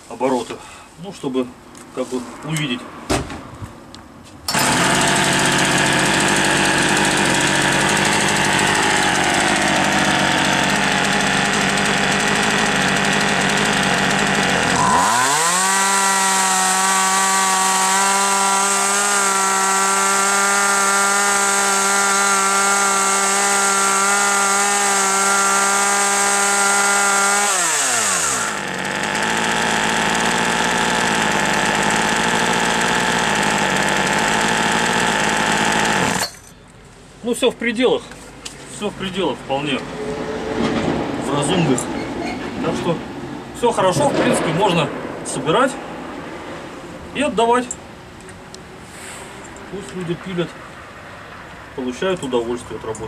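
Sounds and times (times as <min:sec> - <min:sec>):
chainsaw idling and revving: 0:04.5 - 0:36.3.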